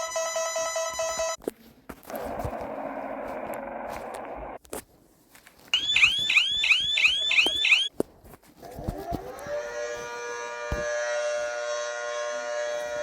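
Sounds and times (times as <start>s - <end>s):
electronic alarm whooping: 5.8s - 7.9s
siren winding up: 5.8s - 7.9s.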